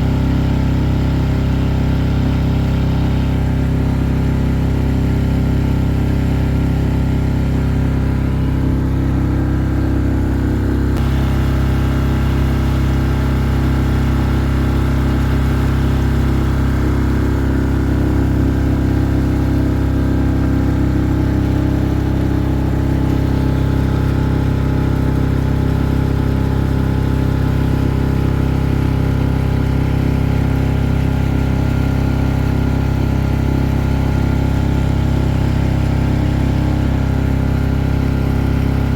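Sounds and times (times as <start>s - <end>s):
engine running steadily: 0.0s - 38.9s.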